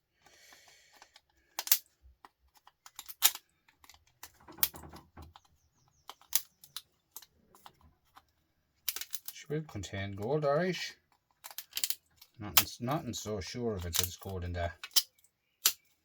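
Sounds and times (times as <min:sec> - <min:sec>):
hand tools clicking: 0:11.2 - 0:12.7, 0:13.8 - 0:15.9.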